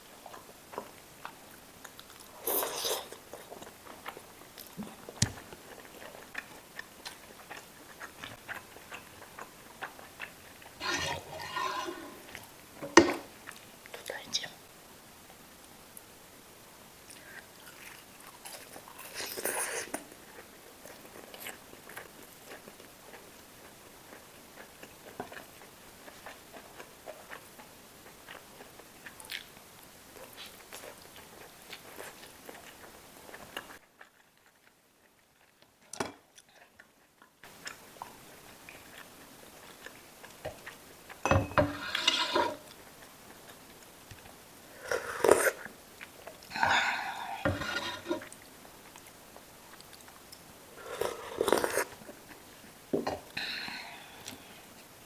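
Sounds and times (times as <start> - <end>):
soft chewing: 0.0 - 55.0.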